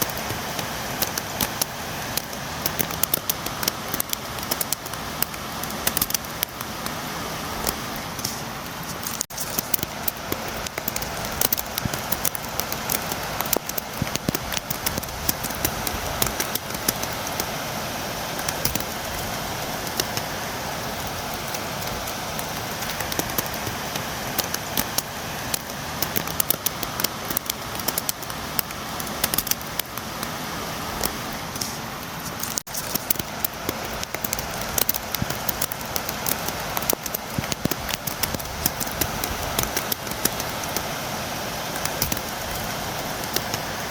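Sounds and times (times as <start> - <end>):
steady rain: 0.0 - 43.9
raindrops tapping on window: 9.1 - 17.6, 32.4 - 40.9.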